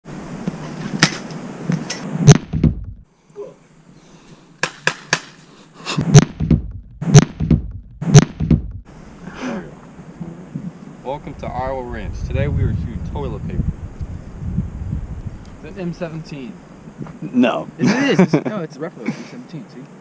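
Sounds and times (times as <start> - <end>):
sharp knocks and thuds: 0.9 - 3.1, 6.0 - 8.9
loud thumps: 2.0 - 3.1, 6.0 - 8.9.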